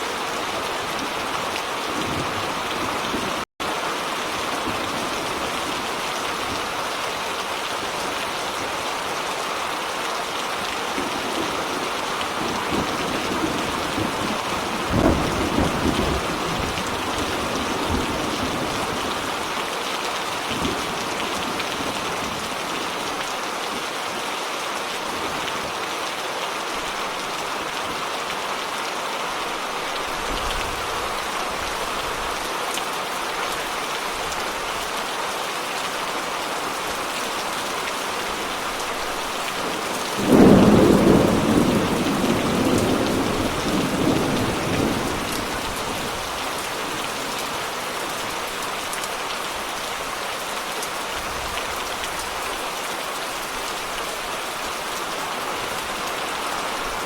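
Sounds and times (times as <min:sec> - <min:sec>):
steady rain falling: 0:00.0 - 0:57.0
thunder clap rumbling: 0:12.4 - 0:19.0, 0:39.7 - 0:46.2.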